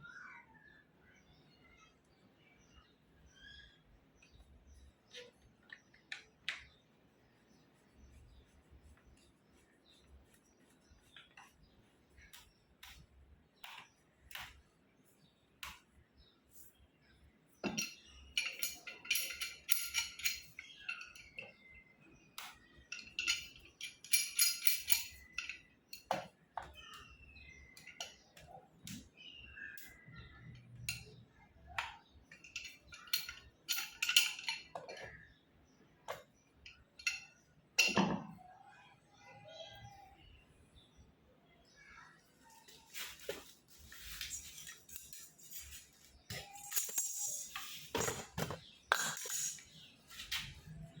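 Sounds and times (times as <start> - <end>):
bright metallic rattling: 17.6 - 21.6, 22.8 - 26.1, 32.3 - 35.2, 44.2 - 49.8
metal tools clinking: 17.6 - 21.8, 22.4 - 26.2, 27.7 - 28.2, 32.0 - 35.4, 36.1 - 38.3, 42.6 - 50.7.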